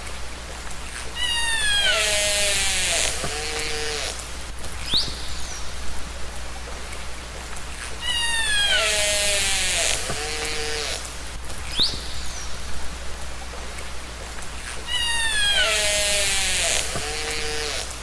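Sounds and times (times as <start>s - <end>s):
steady hiss: 0.0s - 18.0s
killer whale calls: 1.0s - 4.2s, 8.0s - 11.1s, 14.7s - 18.0s.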